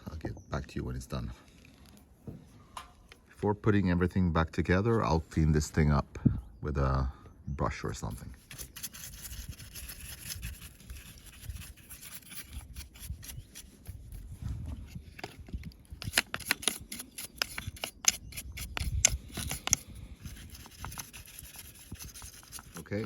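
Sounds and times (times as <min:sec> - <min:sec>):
brush scrubbing: 0:08.4 - 0:14.3, 0:16.1 - 0:23.0.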